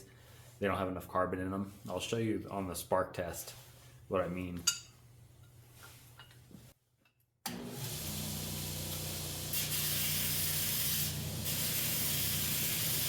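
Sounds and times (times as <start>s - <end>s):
belt grinder motor hum: 7.5s - 13.0s
metal hissing on grinding belt: 8.0s - 13.0s.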